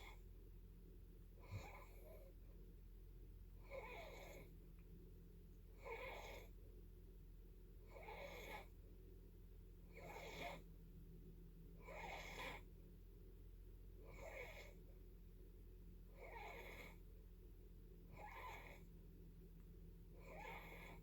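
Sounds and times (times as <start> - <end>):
faint snoring: 1.4 - 2.4, 3.6 - 4.5, 5.7 - 6.6, 7.9 - 8.7, 9.9 - 10.7, 11.8 - 12.7, 14.0 - 14.8, 16.1 - 17.0, 18.1 - 18.9, 20.2 - 21.0.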